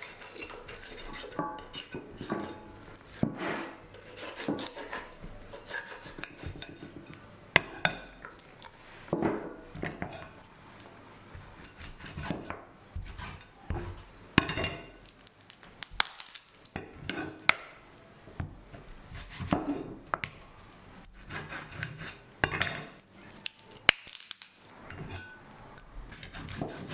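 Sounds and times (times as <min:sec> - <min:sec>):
utensils and dishes clinking: 0:00.0 - 0:08.4, 0:11.6 - 0:15.2, 0:21.1 - 0:26.9.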